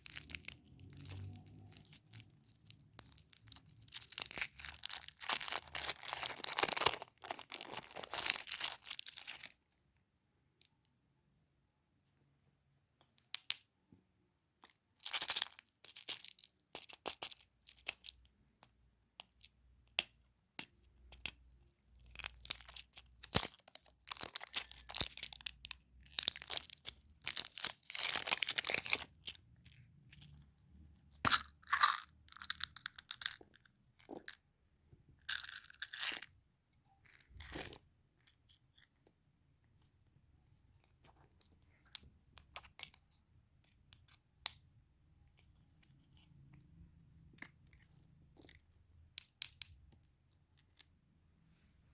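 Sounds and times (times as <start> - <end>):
wrappers crinkling and tearing: 0.0 - 9.5, 22.4 - 29.1.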